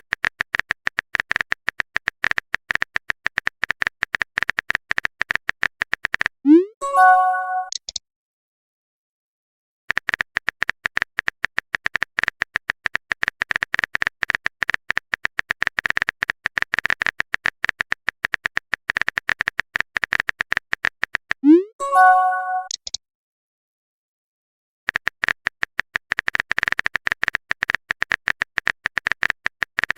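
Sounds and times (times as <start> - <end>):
chime-like message tone: 6.8 - 7.7, 21.8 - 22.7
phone keyboard tapping clicks: 22.6 - 23.0, 24.9 - 29.9.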